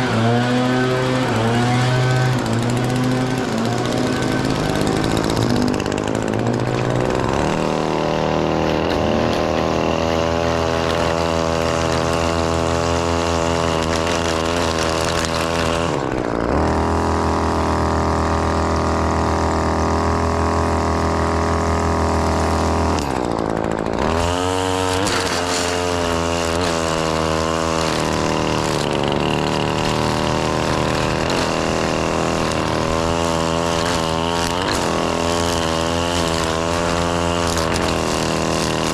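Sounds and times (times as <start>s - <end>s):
string trimmer engine cutting grass: 0.0s - 38.9s.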